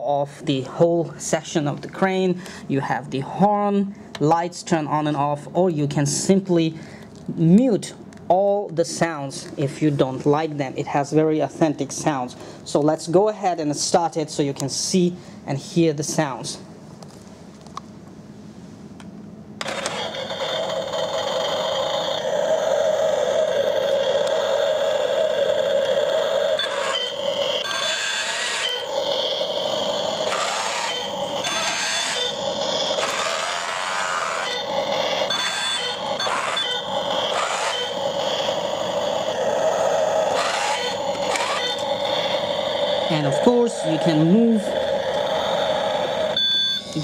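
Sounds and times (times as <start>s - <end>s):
toy electronic engine sound effect: 19.6s - 47.0s.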